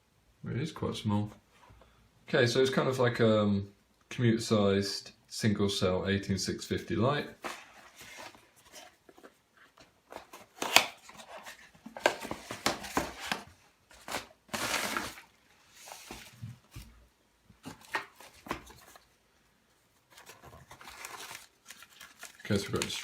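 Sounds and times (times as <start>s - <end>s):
packaging rustling: 7.4s - 17.0s, 20.1s - 23.0s.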